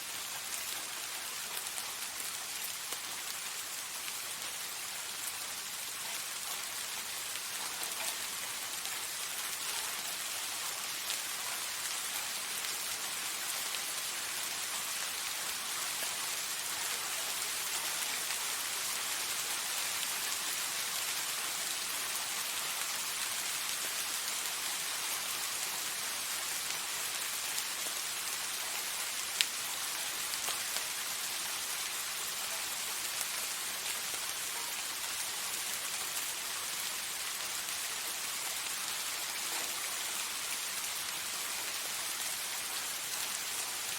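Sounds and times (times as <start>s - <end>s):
soft rain hissing: 0.0s - 43.9s
raindrop ticks: 5.8s - 18.7s, 28.6s - 35.4s.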